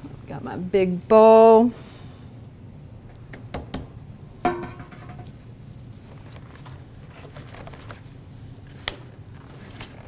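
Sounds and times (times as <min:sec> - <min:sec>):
bowl clunking and ringing: 0:04.5 - 0:05.3
mixing bowl knocks: 0:04.5 - 0:05.4.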